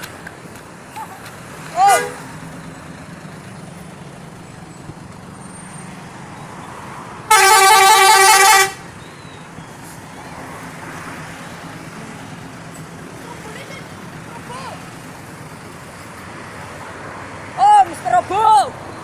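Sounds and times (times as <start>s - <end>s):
multi-tone musical bus horn: 1.8s - 2.4s, 7.3s - 9.0s.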